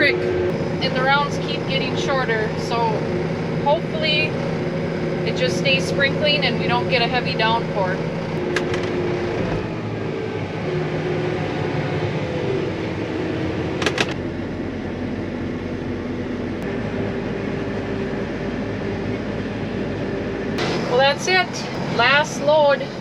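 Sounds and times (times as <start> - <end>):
faint hum tones: 0.0 - 23.0
fan-like rush: 0.0 - 23.0
tractor engine running: 0.0 - 23.0.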